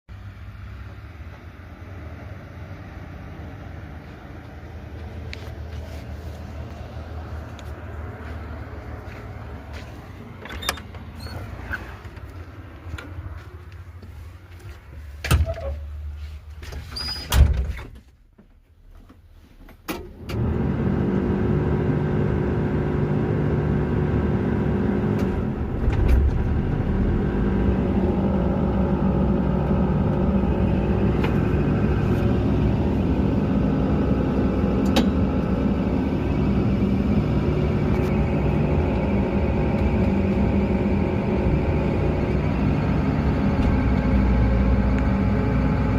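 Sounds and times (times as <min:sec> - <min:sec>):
excavator diesel engine running: 0:00.2 - 0:16.6, 0:20.3 - 0:45.9
knocks and clunks: 0:15.2 - 0:15.9
low rumble: 0:25.0 - 0:45.9.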